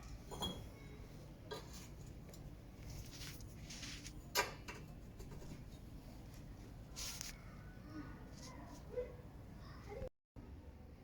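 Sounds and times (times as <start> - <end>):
faint rustles: 6.2 - 9.1.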